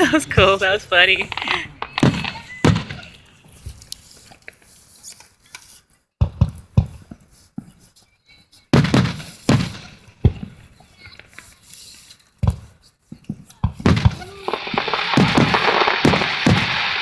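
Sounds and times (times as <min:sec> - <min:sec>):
fireworks bursting with booms: 0:00.0 - 0:03.8, 0:08.7 - 0:10.7, 0:13.7 - 0:17.0.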